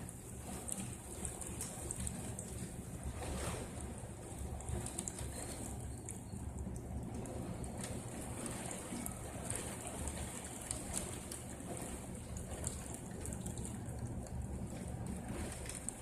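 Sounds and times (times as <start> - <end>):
raindrops ticking on surfaces: 0.0 - 3.0, 3.9 - 16.0
rain falling steadily: 0.0 - 16.0.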